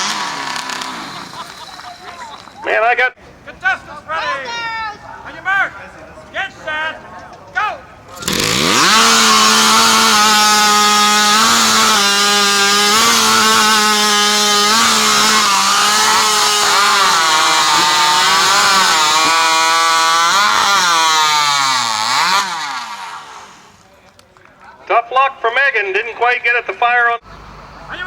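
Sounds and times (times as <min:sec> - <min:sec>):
chainsaw engine screaming: 0:00.0 - 0:02.4, 0:08.1 - 0:23.8.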